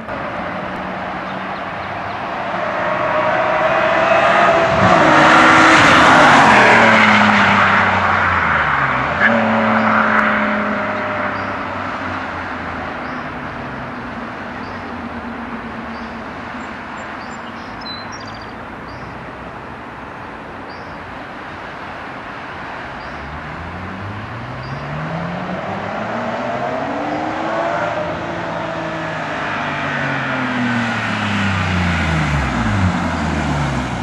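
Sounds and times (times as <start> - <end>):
car engine passing by: 0.2 - 13.3, 23.0 - 34.0.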